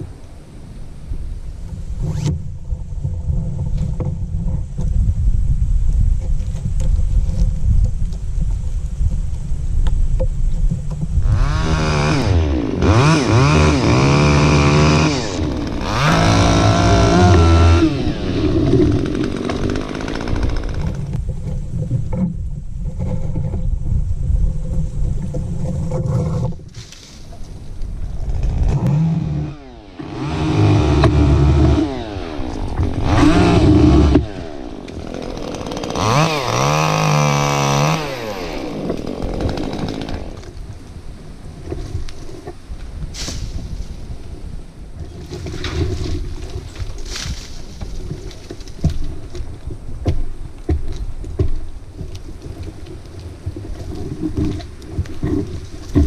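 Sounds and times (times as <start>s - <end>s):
chainsaw revving: 11.2s - 21.2s, 28.2s - 40.6s.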